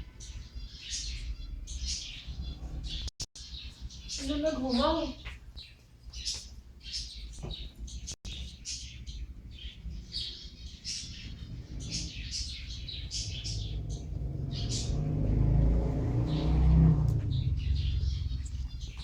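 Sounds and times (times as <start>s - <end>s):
small birds chirping: 0.0s - 19.0s
low rumble: 9.0s - 19.0s.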